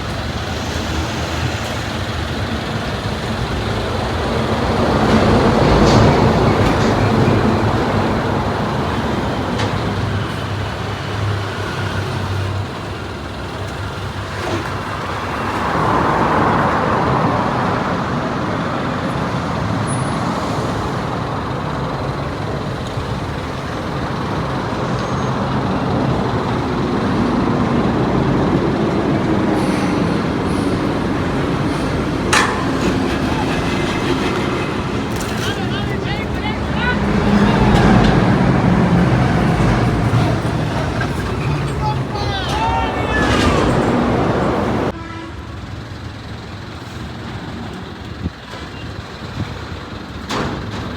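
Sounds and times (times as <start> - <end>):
engine drone: 18.5 - 47.8
vehicle passing: 29.1 - 44.9.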